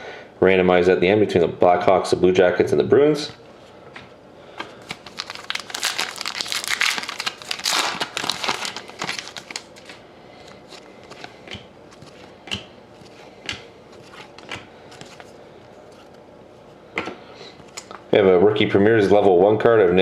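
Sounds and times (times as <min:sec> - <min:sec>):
wrapper crinkling as torn open: 0:04.8 - 0:10.0
cards clicking and tapping: 0:10.8 - 0:15.3.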